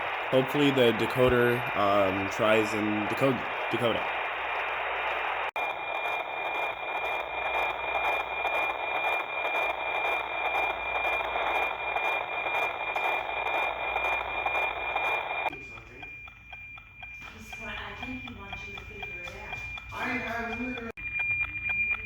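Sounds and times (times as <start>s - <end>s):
radio hiss: 0.0s - 16.0s
regular tick-tock: 0.0s - 22.0s
steady radio tone: 0.0s - 22.0s.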